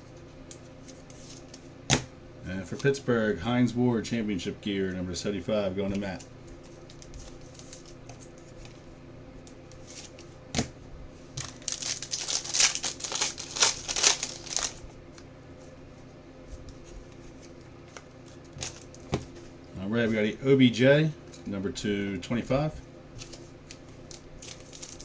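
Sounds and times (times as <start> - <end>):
plastic packaging crinkling: 11.4 - 14.9, 18.3 - 19.1, 23.2 - 25.0.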